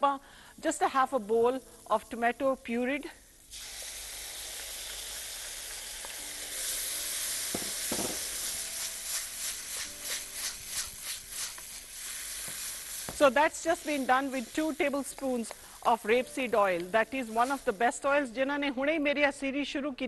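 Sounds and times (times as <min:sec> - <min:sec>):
tomato puree sizzling in oil: 0:00.0 - 0:18.2
spoon stirring in pan: 0:08.0 - 0:13.3.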